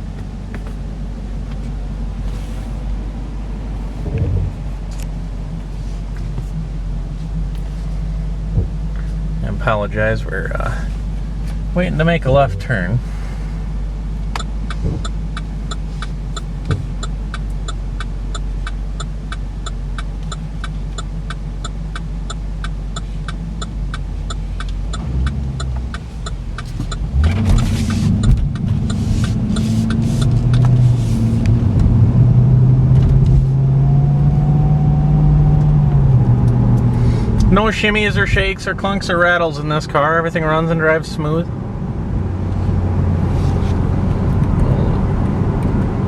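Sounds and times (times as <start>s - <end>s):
car engine idling and revving: 0.0s - 46.0s
turn signal ticking: 4.1s - 33.6s, 34.2s - 38.7s.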